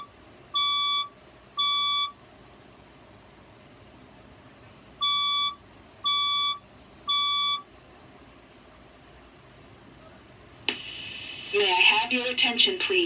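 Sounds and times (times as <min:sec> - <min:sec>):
fire alarm beeps: 0:00.0 - 0:02.2, 0:05.0 - 0:07.7.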